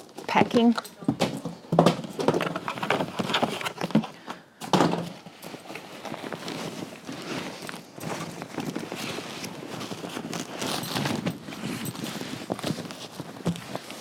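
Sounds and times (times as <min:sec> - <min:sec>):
parts knocking in cardboard box: 0:01.1 - 0:05.2
packing material rustling: 0:01.6 - 0:14.0.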